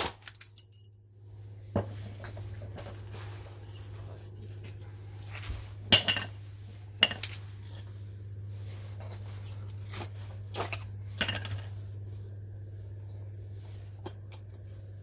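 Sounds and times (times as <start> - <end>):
metal parts clinking: 0.2 - 1.0
steady low hum: 0.4 - 15.0.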